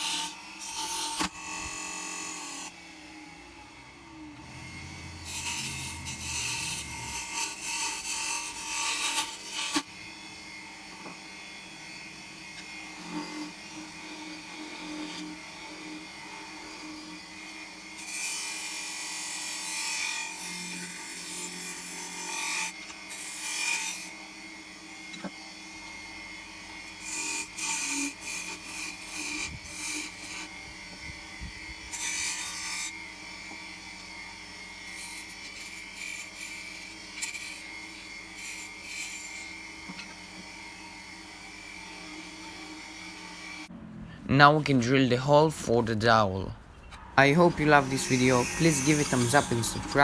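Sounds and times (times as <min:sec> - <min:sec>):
wood lathe motor running: 0:00.0 - 0:43.8, 0:47.2 - 0:50.0
hand tool scraping spinning wood: 0:47.2 - 0:50.0.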